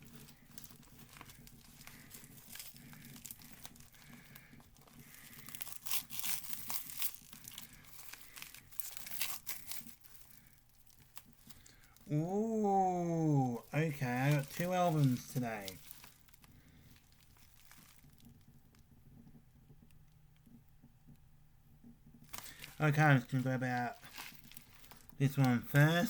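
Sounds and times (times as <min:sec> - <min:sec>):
packaging tearing and crinkling: 0:00.0 - 0:12.1, 0:13.5 - 0:18.4, 0:22.3 - 0:26.0.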